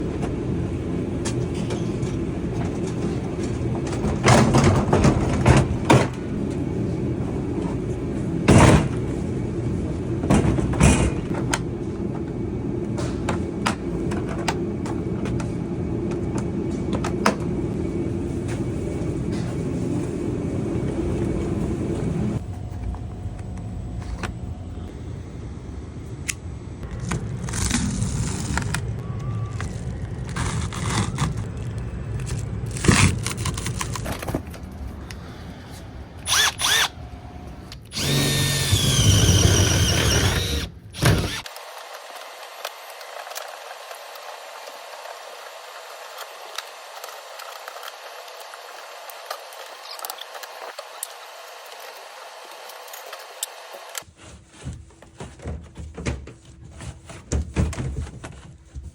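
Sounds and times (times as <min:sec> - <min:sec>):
vehicle engine humming: 0:33.9 - 0:41.4.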